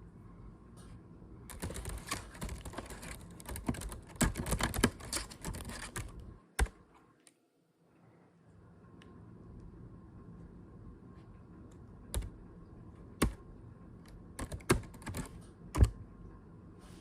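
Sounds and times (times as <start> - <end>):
fast typing on computer keyboard: 1.5 - 6.8, 12.1 - 12.3, 13.2 - 13.4, 14.4 - 16.0.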